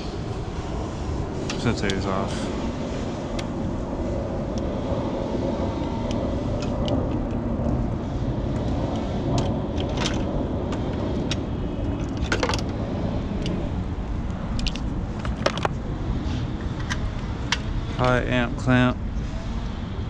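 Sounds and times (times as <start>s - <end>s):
steady low rumble: 0.0s - 20.0s
equipment clicking and clattering: 14.6s - 15.8s.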